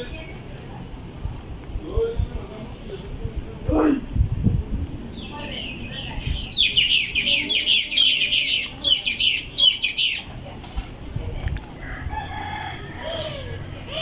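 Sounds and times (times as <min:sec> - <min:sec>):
birds chirping: 0:05.1 - 0:10.6, 0:11.8 - 0:14.0.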